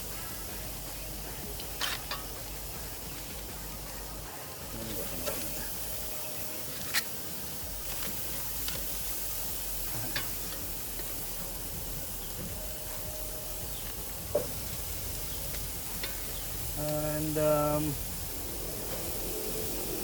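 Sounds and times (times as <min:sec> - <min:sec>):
food sizzling on a grill: 0:00.0 - 0:20.0.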